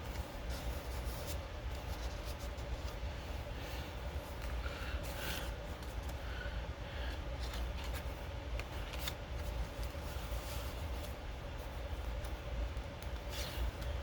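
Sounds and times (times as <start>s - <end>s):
steady low hum: 0.0s - 14.0s
paper pages rustling and flapping: 7.4s - 14.0s.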